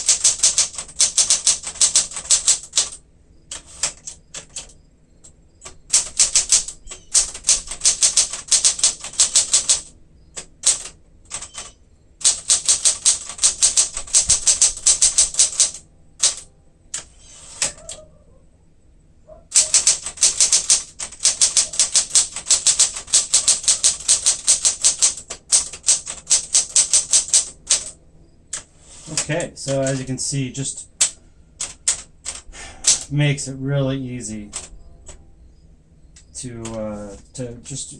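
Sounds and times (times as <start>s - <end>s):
typewriter keystrokes: 0.0s - 18.0s, 19.5s - 30.2s, 31.0s - 33.1s, 34.5s - 35.2s.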